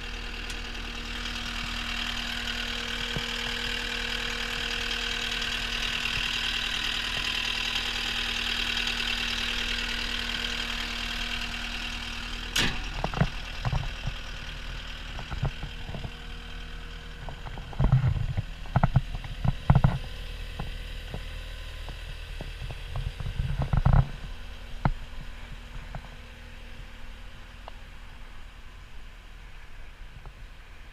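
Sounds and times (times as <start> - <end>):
diesel engine running: 0.0 - 30.9.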